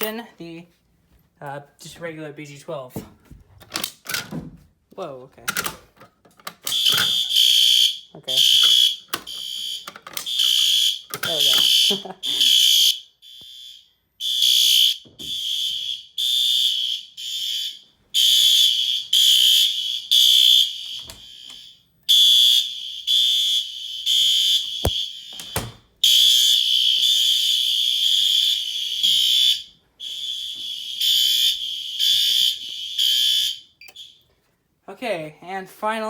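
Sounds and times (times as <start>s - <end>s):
pulsing fire alarm horns: 6.7s - 34.2s.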